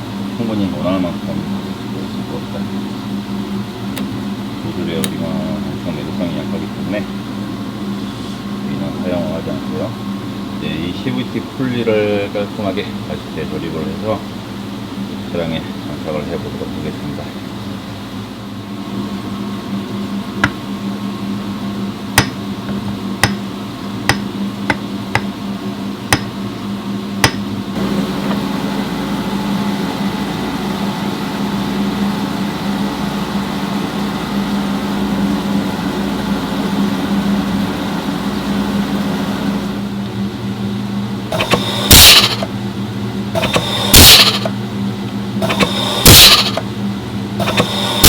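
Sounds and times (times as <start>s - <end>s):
steady machine hum: 0.0s - 48.0s
loud noisy bursts: 41.4s - 42.5s, 43.4s - 44.5s, 45.4s - 46.6s, 47.4s - 48.0s.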